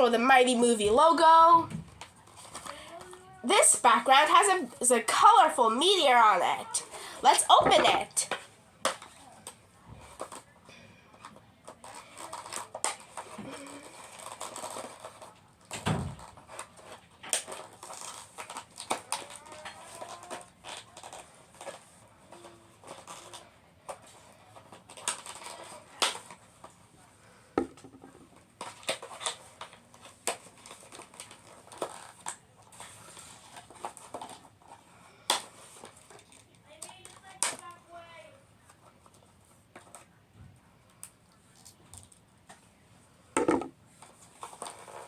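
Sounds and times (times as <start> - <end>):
toy packaging crinkling: 11.3 - 15.3, 16.3 - 26.4, 28.6 - 38.3.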